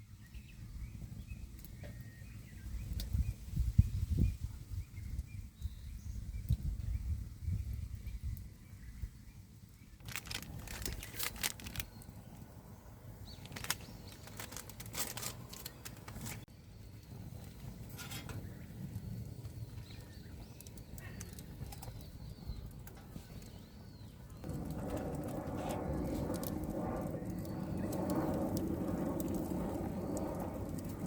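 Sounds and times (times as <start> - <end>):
strong wind: 0.5 - 31.0
tent fabric flapping: 10.0 - 11.9, 13.4 - 16.5.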